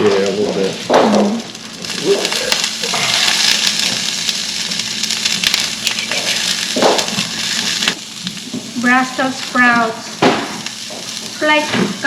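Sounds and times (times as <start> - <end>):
vegetables sizzling in oil: 0.0 - 12.0.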